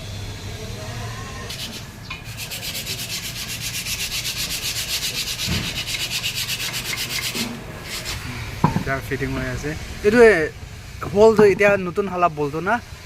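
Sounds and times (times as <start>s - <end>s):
hand tool rasping strokes: 1.5s - 8.8s
dull knock: 8.6s - 9.0s.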